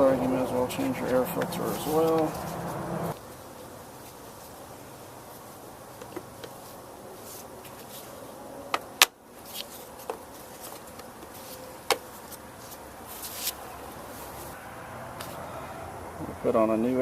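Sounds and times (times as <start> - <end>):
handling clicks and knocks: 0.0 - 2.8.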